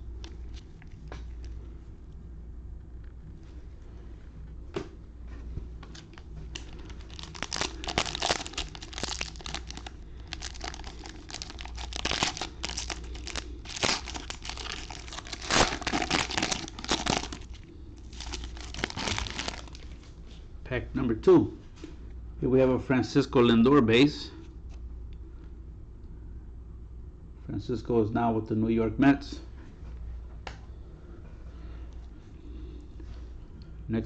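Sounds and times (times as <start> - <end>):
foil wrapper crinkling and tearing: 5.8 - 20.0.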